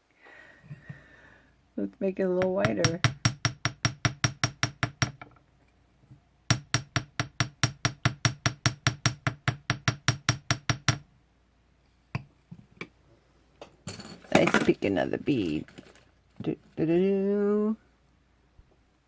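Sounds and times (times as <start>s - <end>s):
hammer tapping metal pin: 2.4s - 5.4s, 6.5s - 11.0s.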